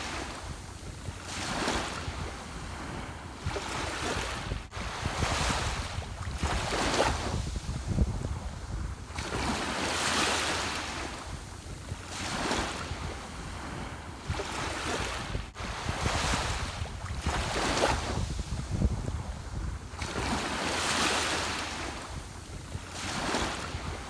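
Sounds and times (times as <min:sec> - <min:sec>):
ocean waves breaking on shore: 0:00.0 - 0:24.0.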